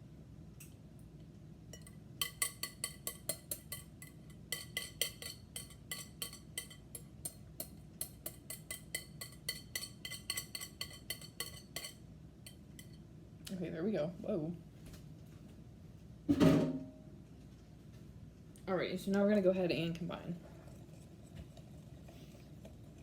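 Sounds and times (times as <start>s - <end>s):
utensil knocking against mixing bowl: 2.2s - 12.0s.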